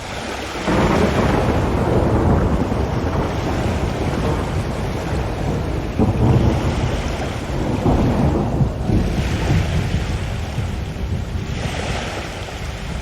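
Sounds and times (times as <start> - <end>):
loud steady rumbling: 0.0 - 11.6.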